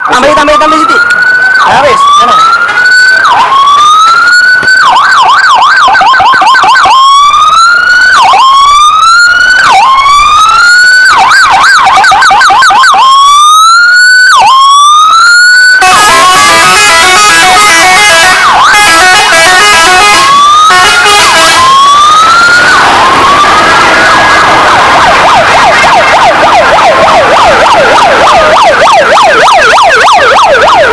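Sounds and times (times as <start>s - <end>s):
siren wailing and yelping: 0.0s - 30.9s
multi-tone bus horn: 14.6s - 22.6s.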